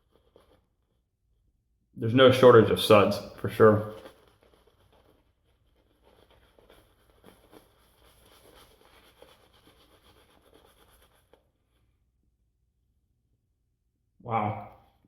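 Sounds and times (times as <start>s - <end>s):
shaving brush swishing lather: 2.3s - 11.8s.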